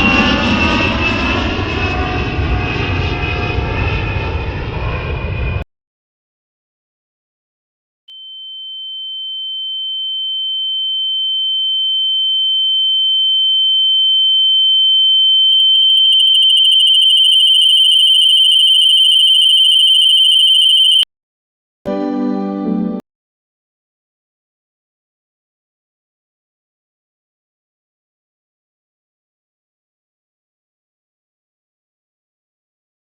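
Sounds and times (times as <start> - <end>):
high-pitched electronic tone: 16.0 - 21.0.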